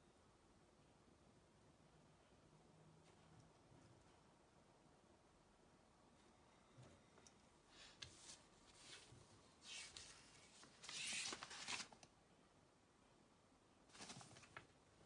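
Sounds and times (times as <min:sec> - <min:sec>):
scratchy rustling and handling: 0:07.8 - 0:12.0.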